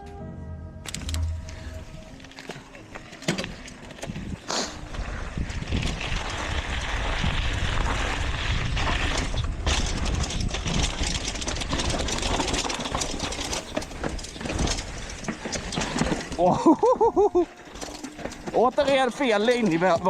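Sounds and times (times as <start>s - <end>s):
bike rattling over rough ground: 0.9s - 20.0s
wind rushing over microphone: 4.1s - 11.8s.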